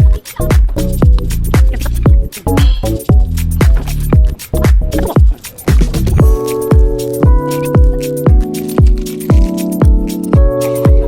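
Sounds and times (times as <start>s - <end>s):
electronic beat music: 0.0s - 11.0s.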